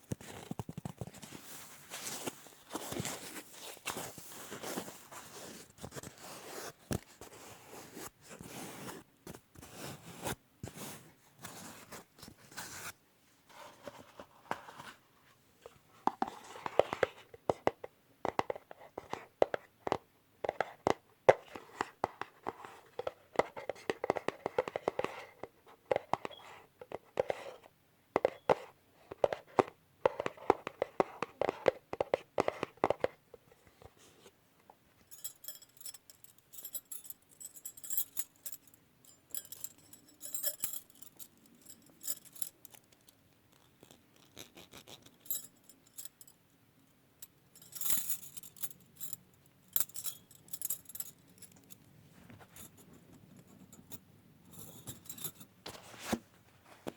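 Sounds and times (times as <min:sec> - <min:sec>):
bracelet jingling: 0:35.0 - 0:43.8, 0:45.0 - 0:46.4, 0:47.2 - 0:51.9, 0:52.5 - 0:55.5.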